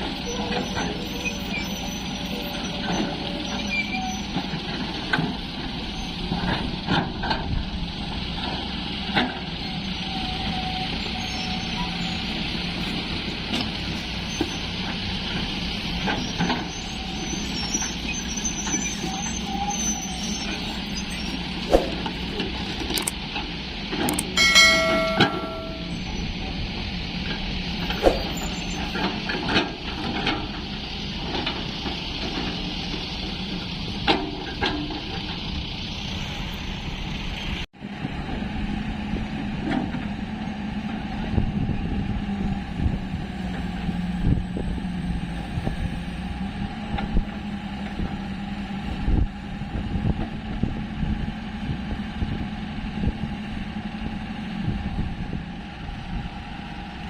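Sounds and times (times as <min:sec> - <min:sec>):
diesel excavator engine running: 0:00.0 - 0:57.0
metallic knocks and clanks: 0:24.0 - 0:26.1.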